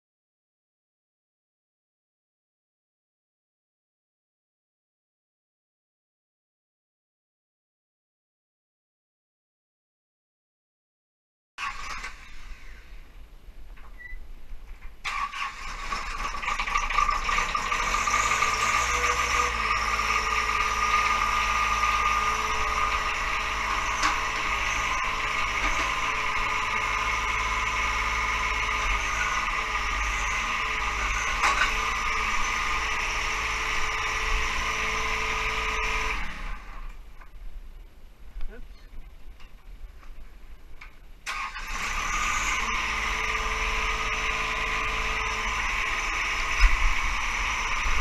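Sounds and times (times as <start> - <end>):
tractor diesel engine running: 11.6 - 13.4, 14.7 - 37.9, 41.2 - 48.0.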